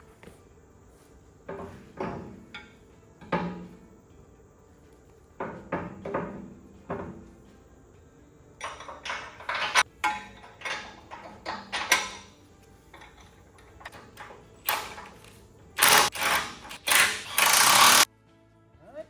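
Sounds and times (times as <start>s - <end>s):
metal tools clanking: 1.5s - 3.8s, 8.6s - 18.1s.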